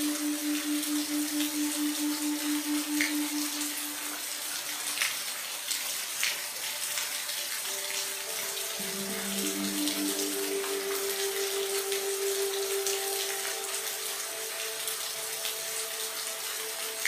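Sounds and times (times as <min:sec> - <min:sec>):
low humming tones: 0:00.0 - 0:04.4
steady rain: 0:00.0 - 0:17.0.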